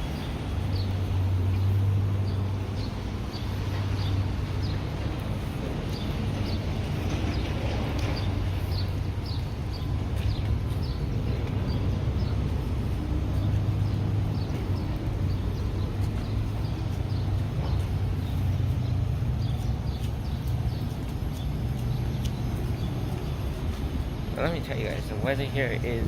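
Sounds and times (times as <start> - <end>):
steady low rumble: 0.0 - 26.0.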